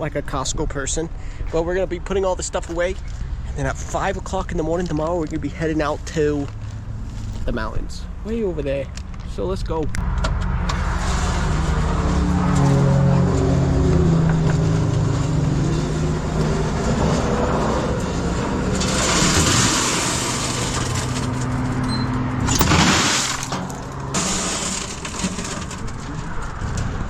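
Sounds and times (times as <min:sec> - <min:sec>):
road noise: 0:00.0 - 0:27.0
car engine hum: 0:06.2 - 0:27.0.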